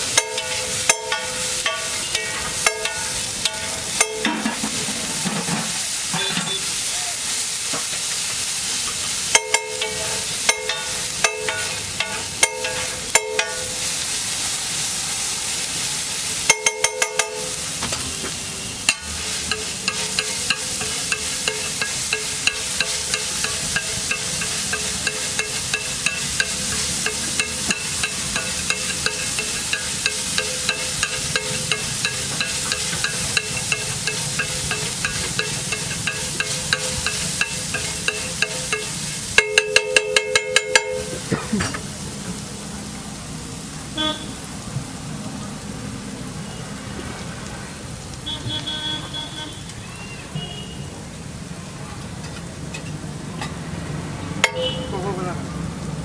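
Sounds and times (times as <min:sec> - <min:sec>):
metal spatula clinking on griddle: 0:00.0 - 0:06.7, 0:08.9 - 0:13.9, 0:16.4 - 0:17.6, 0:18.9 - 0:41.4, 0:54.4 - 0:54.8
egg sizzling on a griddle: 0:00.0 - 0:51.5.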